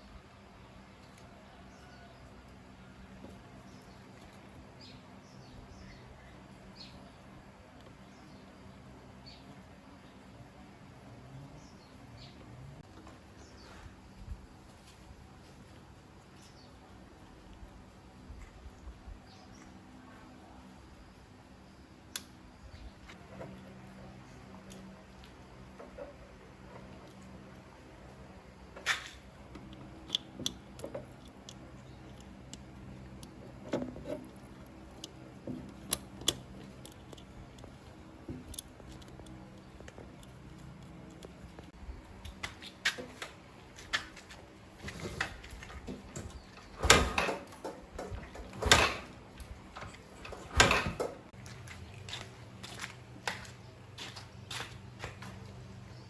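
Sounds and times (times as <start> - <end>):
tools clicking and knocking: 28.8 - 41.7, 45.2 - 51.3.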